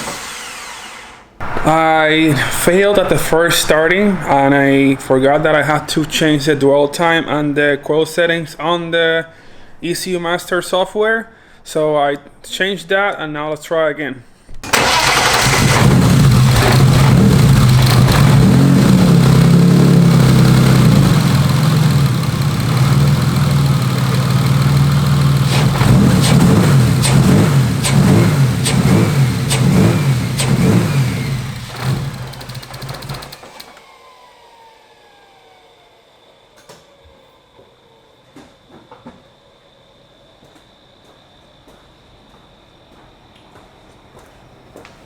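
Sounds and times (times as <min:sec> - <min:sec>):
engine winding down whine: 0:00.0 - 0:07.8, 0:14.7 - 0:41.1
car engine running unevenly: 0:01.4 - 0:06.9, 0:14.7 - 0:33.8.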